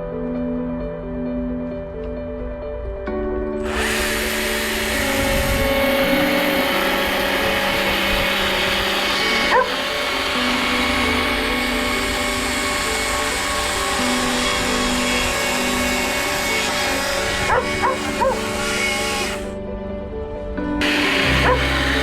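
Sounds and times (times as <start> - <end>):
slow background music: 0.0 - 22.0
wood carving power tool running: 3.6 - 19.6, 20.8 - 22.0.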